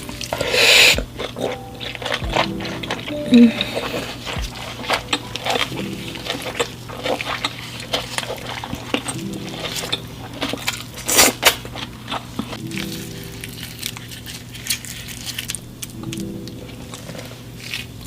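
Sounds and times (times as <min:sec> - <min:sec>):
crackling crunch: 0:03.8 - 0:18.0.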